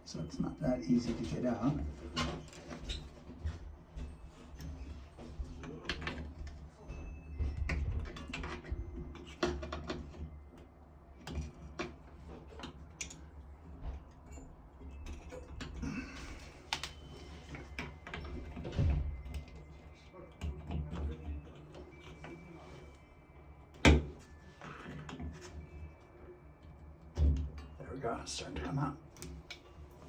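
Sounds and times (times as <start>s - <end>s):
tools clicking and tapping on metal: 4.5s - 6.6s, 7.4s - 23.0s, 23.7s - 25.8s, 28.6s - 30.0s.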